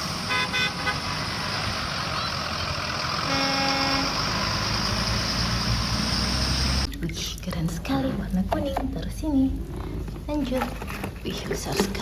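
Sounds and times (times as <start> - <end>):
vehicle horn honk: 0.3 - 1.5, 3.2 - 4.2.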